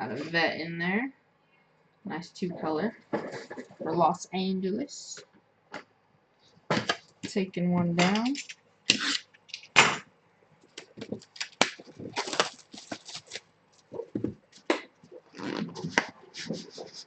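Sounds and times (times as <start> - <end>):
card packaging being opened: 10.8 - 14.7.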